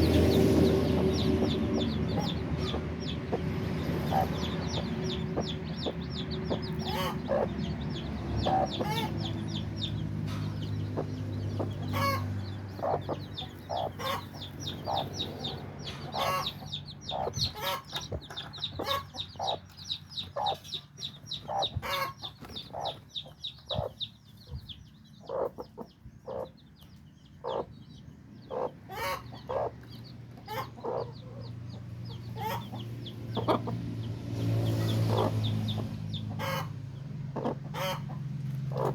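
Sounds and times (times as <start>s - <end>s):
chicks peeping: 0.0s - 38.9s
low clucking calls: 1.3s - 20.6s, 36.3s - 38.9s.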